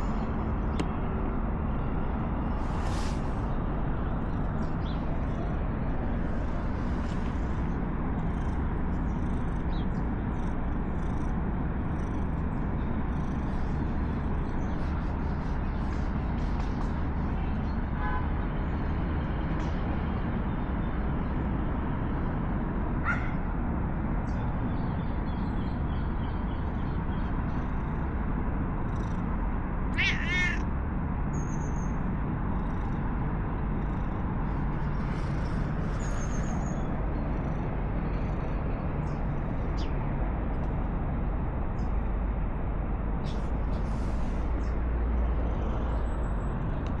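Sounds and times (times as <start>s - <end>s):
low background rumble: 0.0s - 47.0s
cat meowing: 29.9s - 30.7s.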